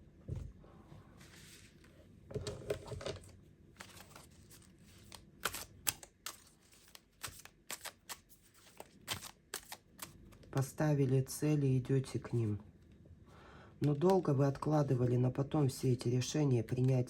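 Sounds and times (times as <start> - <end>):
cards rustling: 3.8 - 10.7
cards clicking and tapping: 5.4 - 9.8.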